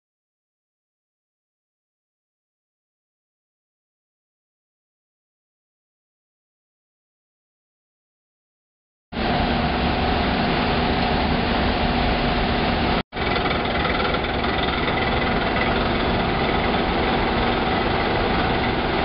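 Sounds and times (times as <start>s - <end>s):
industrial machinery drone: 9.2s - 19.0s.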